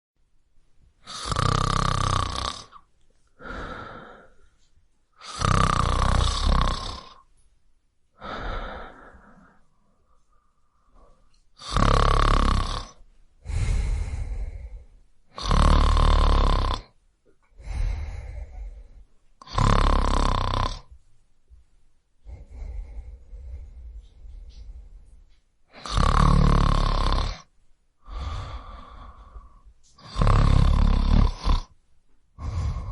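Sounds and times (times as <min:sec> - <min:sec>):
man snoring: 0:01.0 - 0:02.8, 0:05.2 - 0:07.2, 0:11.6 - 0:17.0, 0:17.6 - 0:20.9, 0:22.2 - 0:24.7, 0:25.7 - 0:31.8, 0:32.4 - 0:32.9
quiet breathing: 0:02.5 - 0:21.6, 0:22.2 - 0:32.9.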